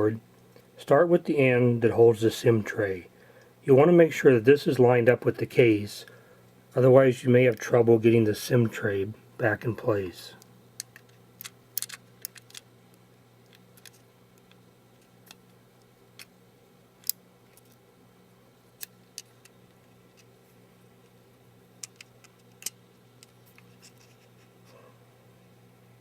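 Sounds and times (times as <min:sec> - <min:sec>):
faint steady hum: 0:00.0 - 0:26.0
small clicks of phone parts: 0:10.4 - 0:12.7, 0:13.4 - 0:16.3, 0:17.0 - 0:17.8, 0:21.8 - 0:24.2.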